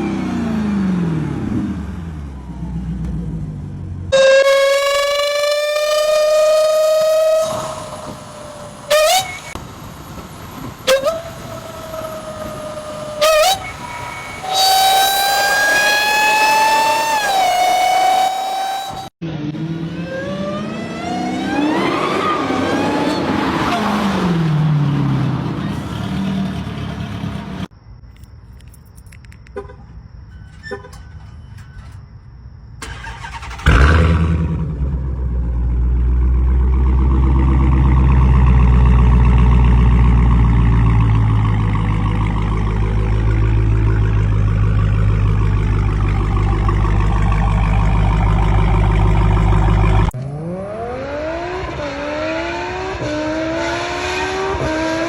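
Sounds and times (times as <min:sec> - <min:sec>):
car engine revving and idling: 0:00.0 - 0:27.7, 0:32.9 - 0:55.0.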